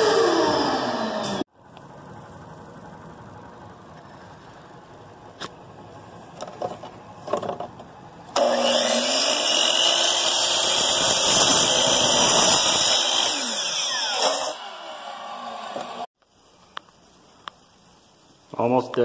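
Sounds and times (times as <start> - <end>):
electric power tool running: 8.4 - 16.1.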